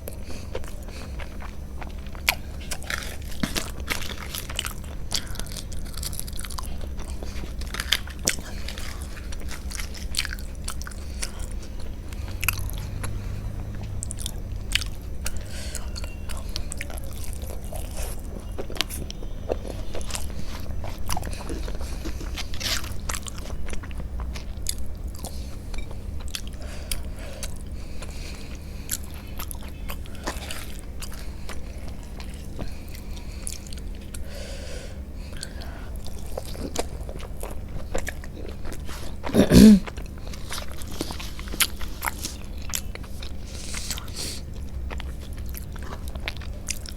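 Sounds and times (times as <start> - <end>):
chewing and mouth smacks: 0.0 - 34.3, 35.0 - 46.9
steady low hum: 0.0 - 46.9.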